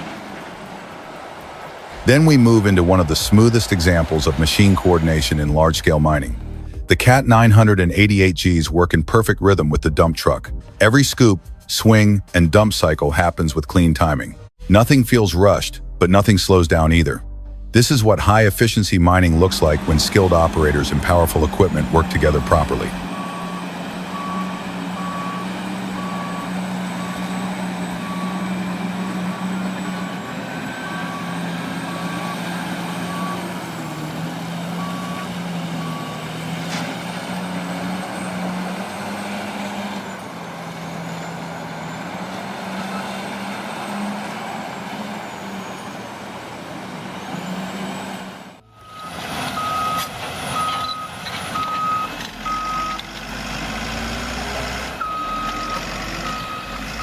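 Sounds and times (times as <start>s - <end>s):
heavy diesel engines running: 0.0s - 15.6s, 17.8s - 57.0s
reversing alarm beeping: 18.2s - 53.1s, 53.9s - 57.0s
higher-pitched reversing alarm: 19.3s - 44.2s, 45.0s - 53.0s, 55.0s - 57.0s.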